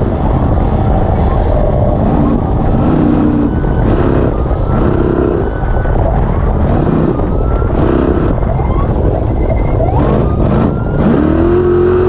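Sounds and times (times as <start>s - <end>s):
off-road vehicle engine revving: 2.0s - 5.6s, 6.6s - 8.5s, 10.0s - 12.0s.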